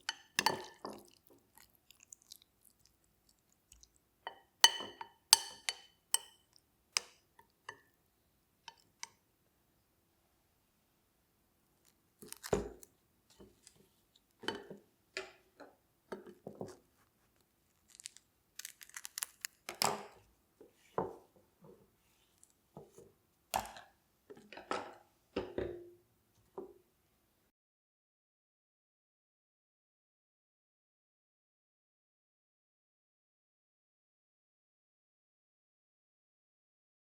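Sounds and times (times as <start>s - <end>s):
food packaging crinkling and tearing: 11.8s - 12.9s, 17.7s - 19.8s.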